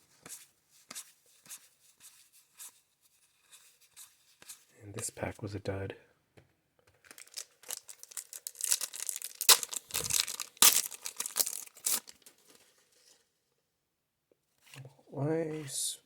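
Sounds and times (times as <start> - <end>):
wax wrapper tearing and crinkling: 7.0 - 12.5.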